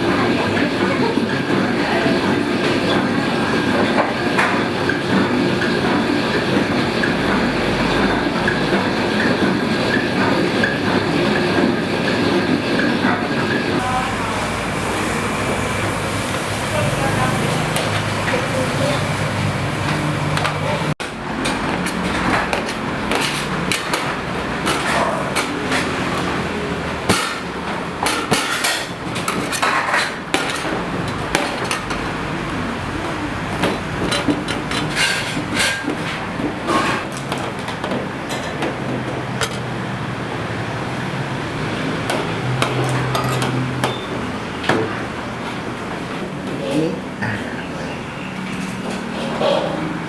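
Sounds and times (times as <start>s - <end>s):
cookware knocking and clattering: 21.4s - 39.9s, 42.0s - 44.9s.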